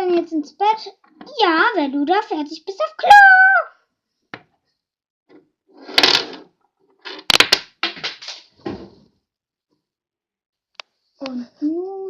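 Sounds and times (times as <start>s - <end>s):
objects clicking and knocking: 5.9s - 8.8s.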